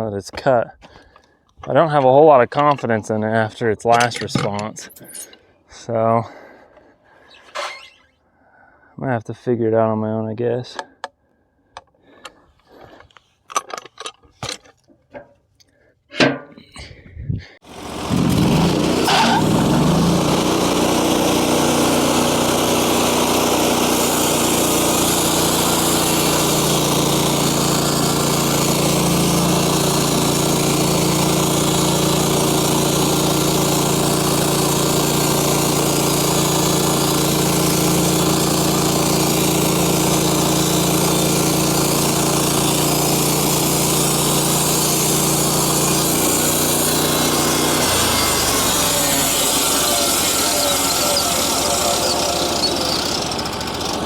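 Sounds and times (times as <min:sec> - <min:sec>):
saw blade cutting log: 0:02.8 - 0:05.4, 0:07.3 - 0:08.1, 0:17.7 - 0:54.0
sawmill engine running: 0:17.6 - 0:54.0.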